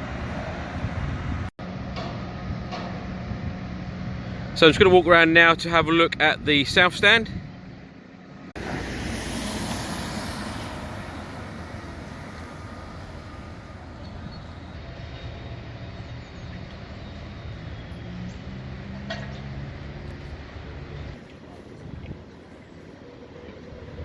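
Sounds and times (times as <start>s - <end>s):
large vehicle passing: 7.4s - 21.2s.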